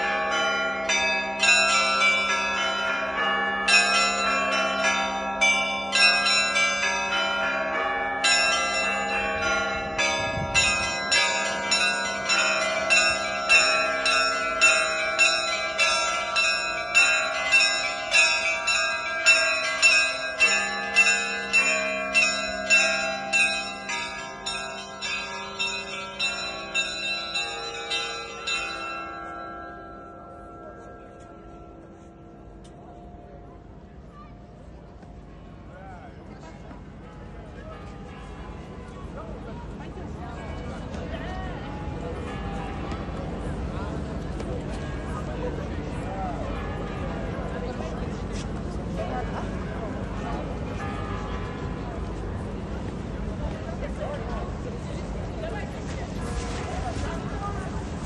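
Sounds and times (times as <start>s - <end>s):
large bell humming: 0.0s - 35.0s
small church bells ringing: 0.0s - 58.0s.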